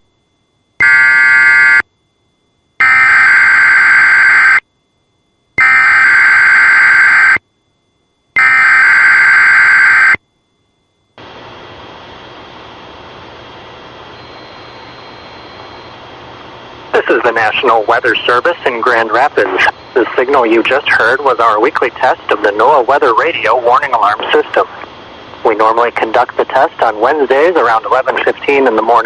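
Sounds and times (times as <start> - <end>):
harsh electronic data screeches: 2.8 - 4.6, 5.6 - 7.4, 8.4 - 10.2
steady radio hiss: 11.2 - 29.0.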